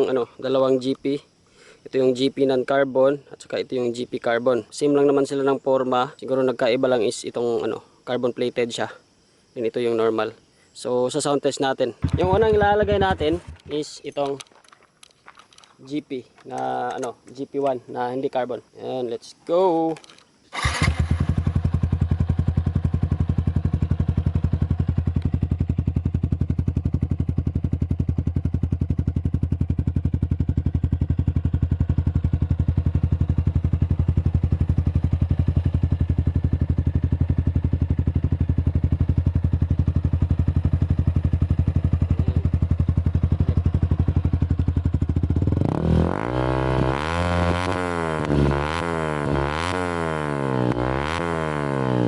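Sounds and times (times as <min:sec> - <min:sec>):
motorcycle engine idling and revving: 0:12.0 - 0:14.4, 0:20.5 - 0:52.0.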